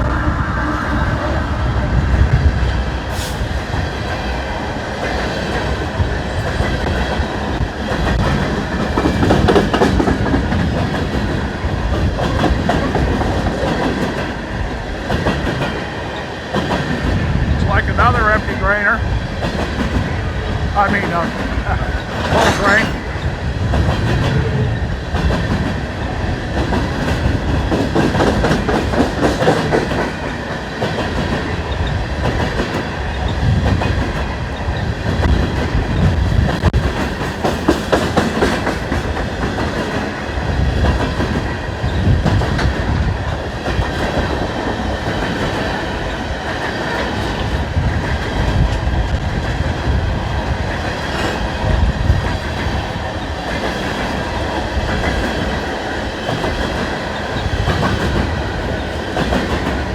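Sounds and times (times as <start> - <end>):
freight train rumbling past: 0.0 - 59.9
wheels clacking over rails: 4.8 - 17.2.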